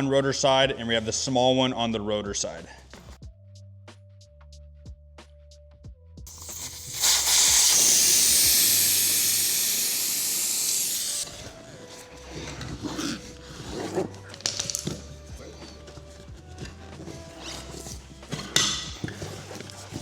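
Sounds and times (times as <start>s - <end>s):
air hissing out of tire: 6.3s - 11.6s.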